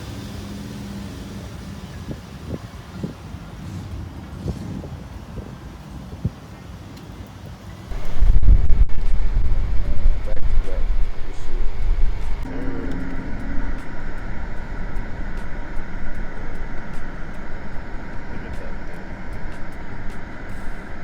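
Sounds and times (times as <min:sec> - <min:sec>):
road rumble: 0:00.0 - 0:21.0
car engine: 0:07.6 - 0:21.0.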